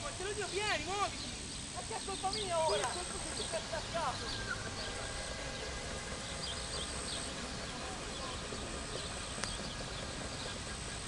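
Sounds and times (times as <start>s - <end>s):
small birds chirping: 0.0s - 11.0s
thin high steady whine: 0.0s - 11.0s.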